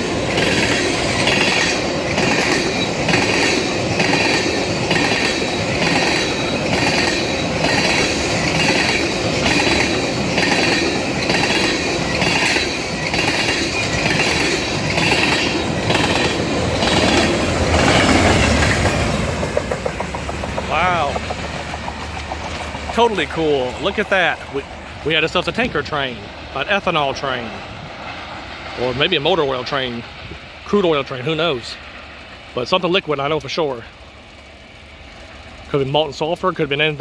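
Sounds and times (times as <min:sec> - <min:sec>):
wheel-on-rail screech: 0:00.0 - 0:26.7
low train rumble: 0:00.0 - 0:37.0
train wheels clicking over rail joints: 0:00.0 - 0:37.0.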